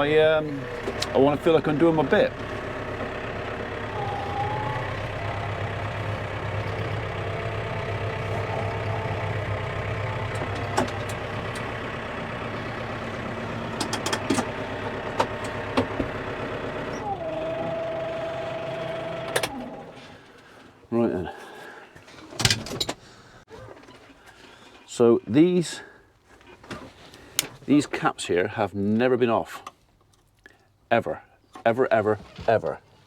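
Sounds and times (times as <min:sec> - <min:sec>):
vehicle engine running: 0:00.0 - 0:20.2.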